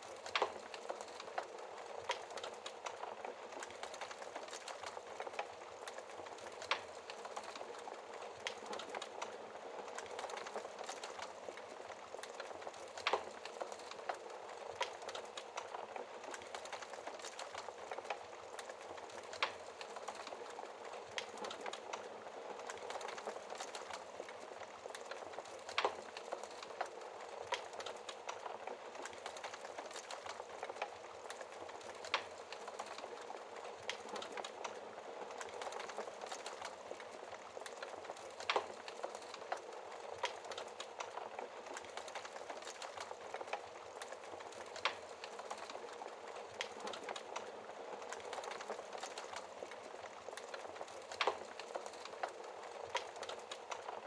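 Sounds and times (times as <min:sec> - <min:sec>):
fire pops and snaps: 0:00.0 - 0:54.0
wood fire crackling: 0:00.0 - 0:54.0.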